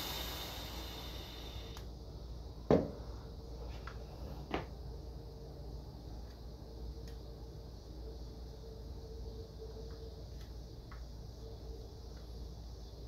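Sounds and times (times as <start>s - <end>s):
hiss: 0.0s - 1.8s.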